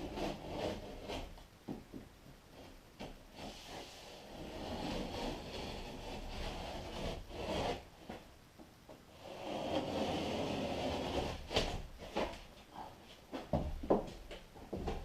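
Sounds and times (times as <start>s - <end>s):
scraping against drywall: 0.0s - 1.4s, 2.5s - 8.2s, 9.1s - 12.4s.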